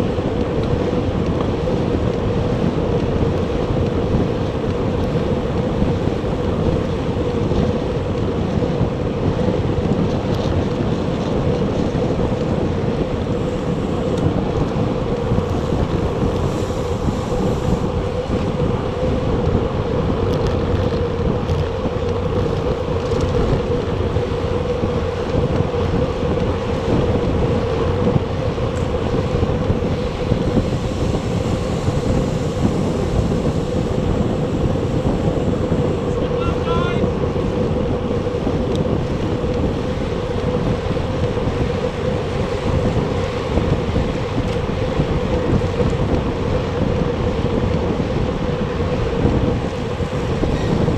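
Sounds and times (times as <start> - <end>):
wind buffeting microphone: 0.0 - 50.9
steady hum: 21.1 - 45.5.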